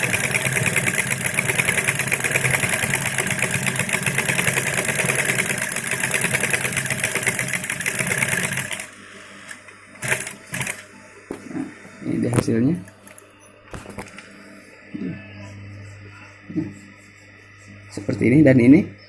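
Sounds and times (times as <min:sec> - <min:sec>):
sewing machine stitching: 0:00.0 - 0:08.9, 0:10.0 - 0:10.8.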